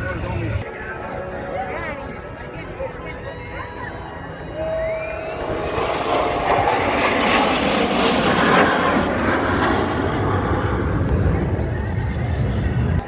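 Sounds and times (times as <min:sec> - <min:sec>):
airplane passing overhead: 0:00.0 - 0:13.0.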